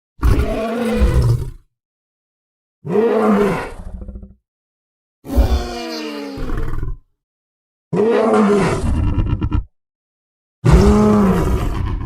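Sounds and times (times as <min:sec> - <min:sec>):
dinosaur roar: 0:00.2 - 0:01.6, 0:05.3 - 0:07.0, 0:08.0 - 0:09.7, 0:10.6 - 0:12.0.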